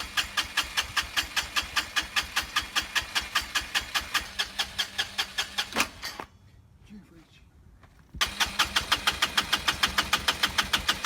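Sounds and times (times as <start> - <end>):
engine cranking without firing: 0.0 - 6.3, 8.2 - 11.0
starter motor hum: 8.2 - 11.0.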